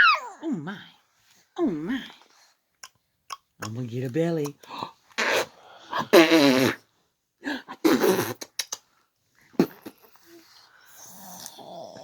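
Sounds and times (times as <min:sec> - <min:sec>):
baby mouth clicks: 0:02.8 - 0:03.8, 0:04.4 - 0:04.7, 0:08.4 - 0:08.8.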